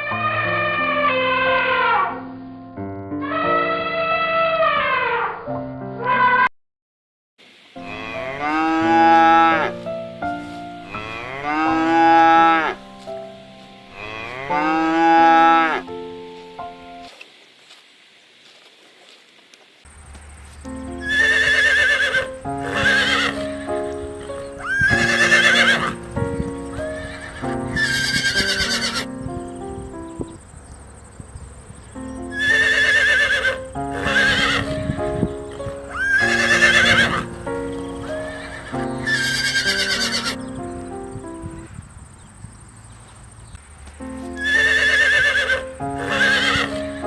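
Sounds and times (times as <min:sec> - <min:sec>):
horse neighing: 0:21.0 - 0:26.0, 0:26.7 - 0:29.1, 0:32.3 - 0:34.8, 0:35.4 - 0:37.4, 0:38.0 - 0:40.4, 0:44.4 - 0:47.0.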